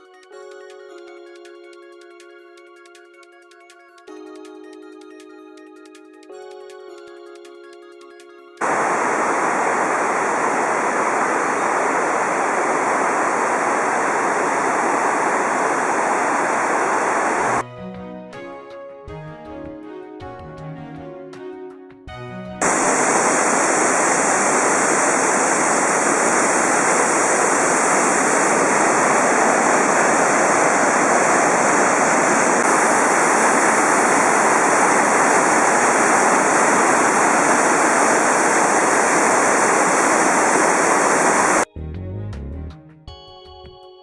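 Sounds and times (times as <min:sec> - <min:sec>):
waterfall rushing: 0:08.6 - 0:17.6, 0:22.6 - 0:41.6.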